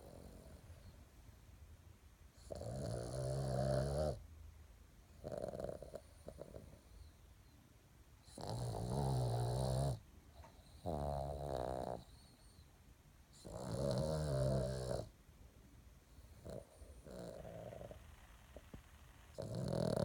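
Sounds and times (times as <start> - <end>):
dog snoring: 0.0 - 1.0, 2.4 - 4.2, 5.1 - 7.1, 8.2 - 12.6, 13.3 - 15.1, 16.1 - 20.0.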